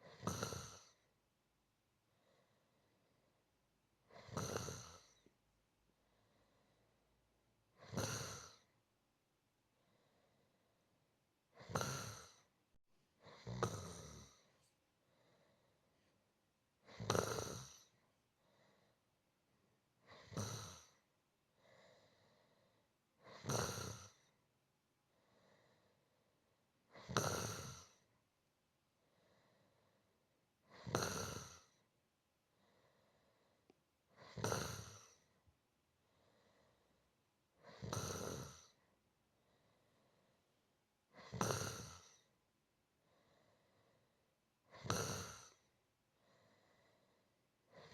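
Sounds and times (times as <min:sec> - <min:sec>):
person snoring softly: 0:00.0 - 0:01.2, 0:04.0 - 0:05.4, 0:07.7 - 0:08.8, 0:11.5 - 0:12.6, 0:13.2 - 0:16.1, 0:16.8 - 0:19.1, 0:20.0 - 0:24.4, 0:25.1 - 0:26.3, 0:26.9 - 0:28.2, 0:29.0 - 0:31.9, 0:32.5 - 0:40.5, 0:41.1 - 0:42.4, 0:43.0 - 0:47.9.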